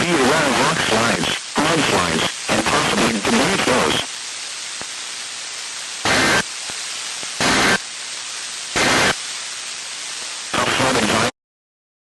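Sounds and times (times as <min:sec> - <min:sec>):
radio static hiss: 0:00.0 - 0:11.4
data tone bursts: 0:06.1 - 0:06.4, 0:07.4 - 0:07.8.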